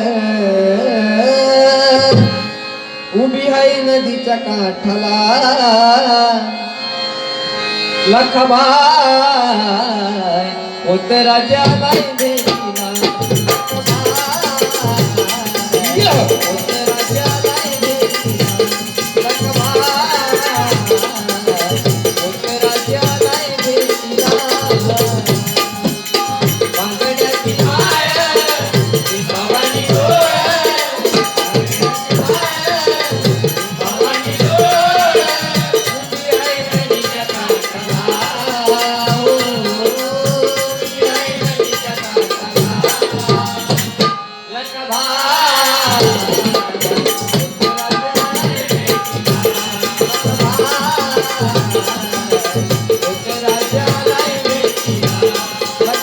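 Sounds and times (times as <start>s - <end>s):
jingling percussion: 11.6s - 56.0s
hand drum rhythm: 11.7s - 44.1s, 45.8s - 56.0s.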